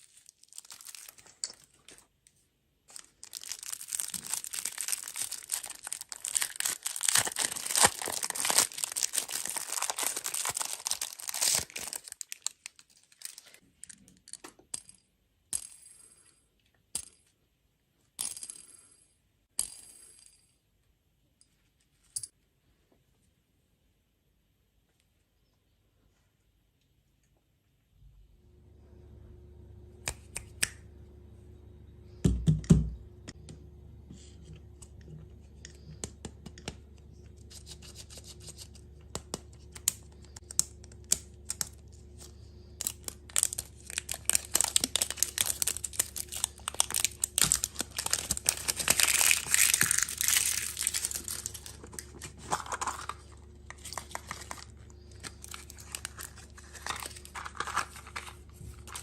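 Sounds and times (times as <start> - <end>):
plastic packaging crinkling: 0.0 - 2.1, 2.9 - 13.6, 37.2 - 59.0.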